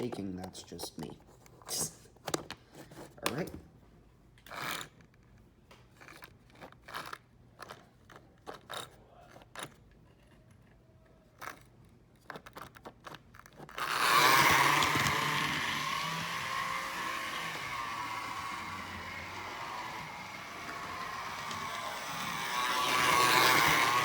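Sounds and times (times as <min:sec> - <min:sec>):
model train motor whirring: 0:13.7 - 0:24.0.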